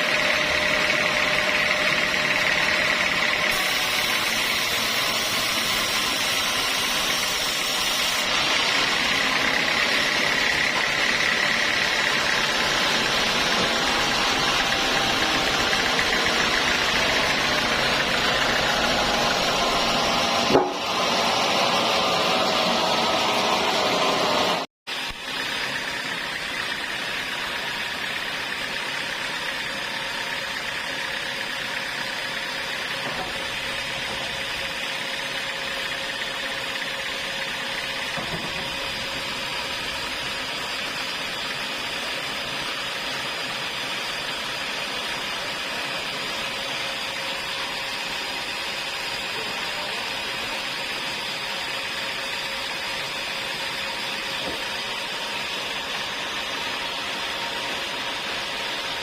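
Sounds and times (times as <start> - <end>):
sawmill saw whining: 0.0 - 59.0.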